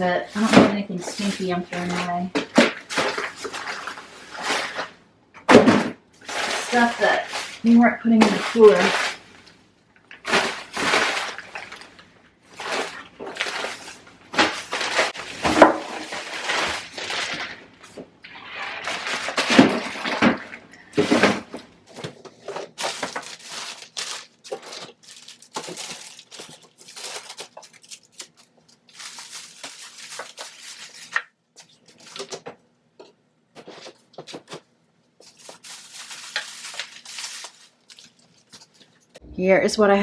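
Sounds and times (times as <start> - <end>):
plastic rustling: 0.0 - 39.2
containers clattering: 10.1 - 28.4.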